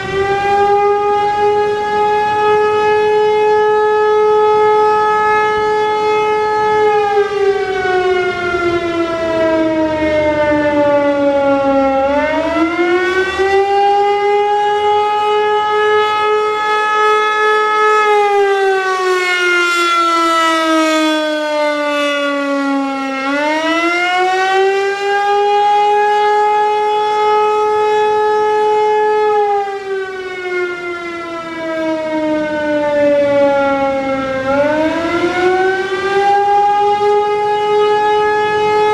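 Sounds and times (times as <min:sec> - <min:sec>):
wavering warning siren: 0:00.0 - 0:38.9.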